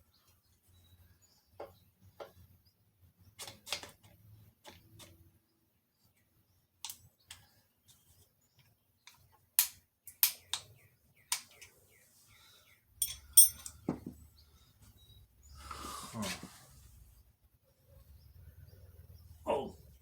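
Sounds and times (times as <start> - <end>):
ringing metal clinks: 13.0 - 13.9.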